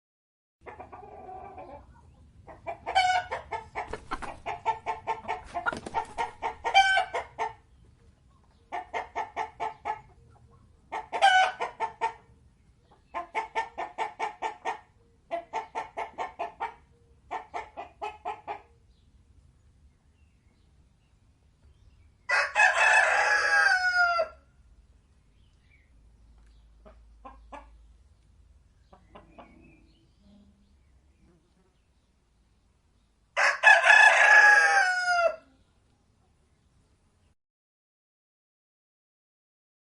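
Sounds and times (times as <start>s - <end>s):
chickens clucking: 0.6s - 18.8s, 26.3s - 30.3s.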